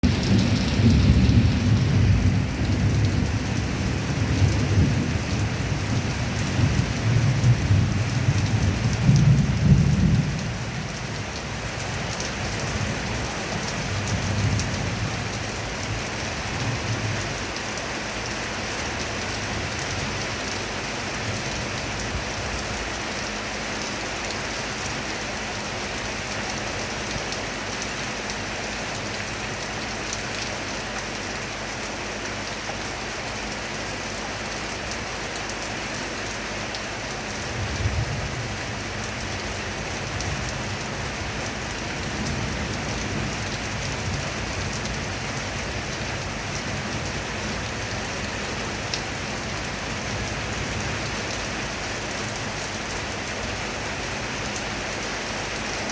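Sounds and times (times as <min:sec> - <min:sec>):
thunder rumbling: 0:00.0 - 0:13.2
heavy rain: 0:00.0 - 0:55.9.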